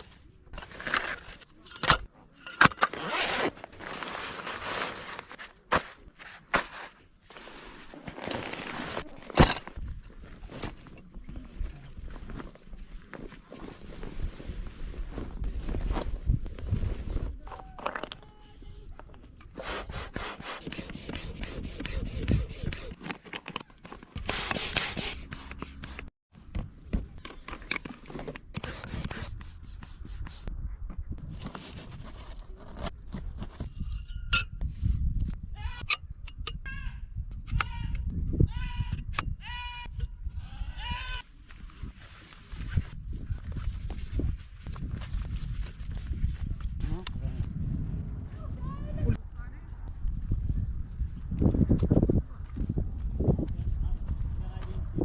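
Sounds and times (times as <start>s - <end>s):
rustling and scraping: 0.0s - 26.1s, 31.2s - 35.4s.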